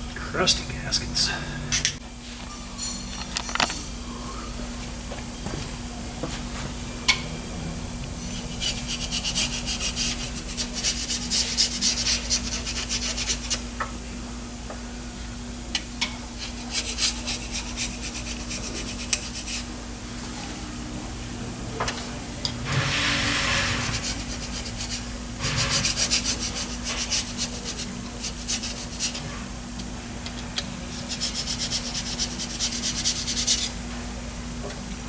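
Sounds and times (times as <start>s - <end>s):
hand tools rasping and scraping: 22.7s - 29.3s.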